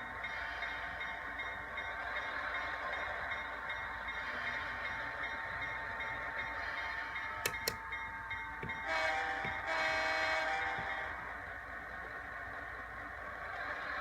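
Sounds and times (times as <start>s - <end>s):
model train diesel engine sound: 0.0s - 14.0s
sharp clicks: 7.5s - 7.9s
train horn blasts: 8.7s - 11.2s.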